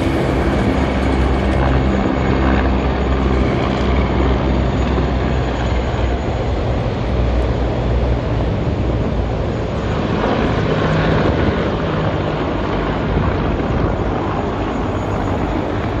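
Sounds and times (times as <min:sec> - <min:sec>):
helicopters flying over: 0:00.0 - 0:16.0.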